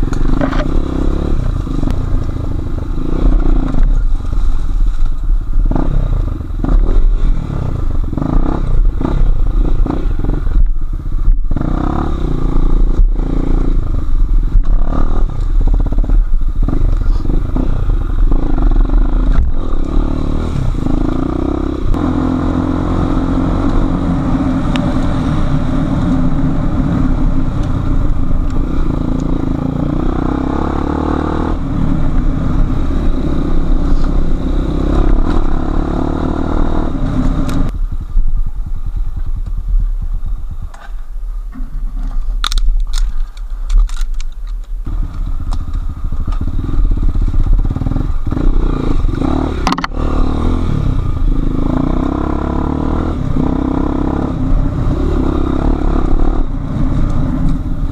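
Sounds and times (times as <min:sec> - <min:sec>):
motorcycle engine revving: 0:00.0 - 0:40.2, 0:44.8 - 0:57.9
sharp knocks and clicks: 0:49.7 - 0:50.0.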